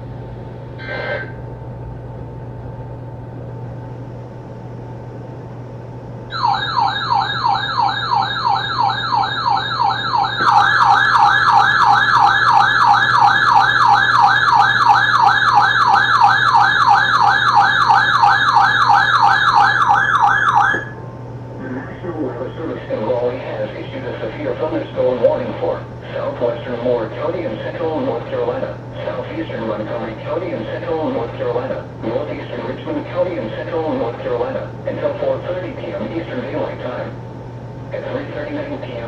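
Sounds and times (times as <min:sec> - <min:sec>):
faint hum: 0:00.0 - 0:39.0
warbling electronic alarm tone: 0:06.3 - 0:21.0.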